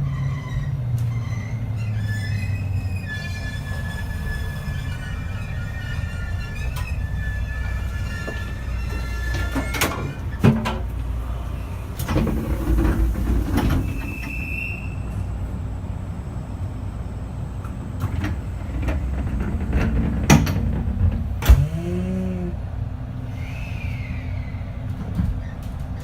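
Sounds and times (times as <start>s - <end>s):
wheel squeal: 0.0s - 10.6s, 12.3s - 15.4s, 23.3s - 26.0s
train interior rumble: 0.0s - 26.0s.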